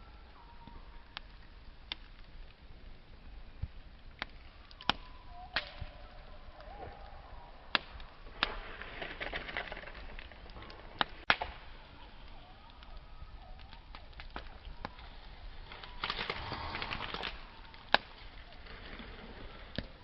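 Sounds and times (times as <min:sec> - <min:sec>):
campfire crackling and popping: 0:00.0 - 0:20.0
faint wavering whistle: 0:04.5 - 0:07.7.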